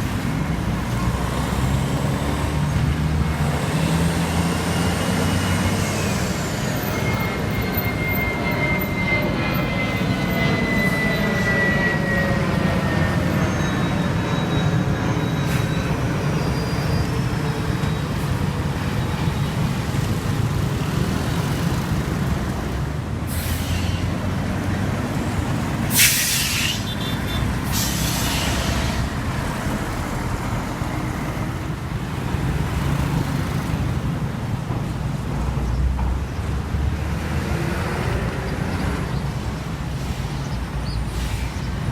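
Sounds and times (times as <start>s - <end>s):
truck diesel engines rumbling: 0.0s - 41.9s
air brake hisses: 23.3s - 24.1s, 25.9s - 27.0s, 27.6s - 29.1s.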